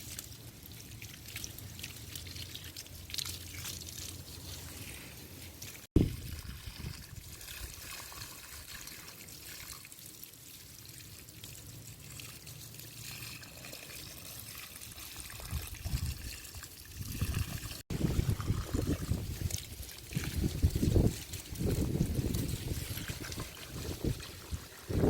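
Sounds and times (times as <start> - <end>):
water trickling: 0.0 - 25.0
gusty wind rumbling: 17.0 - 19.6, 20.2 - 25.0.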